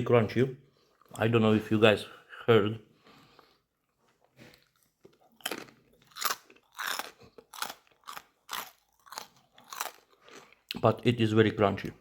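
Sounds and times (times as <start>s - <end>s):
crispy pork skin crunching: 4.6s - 10.7s.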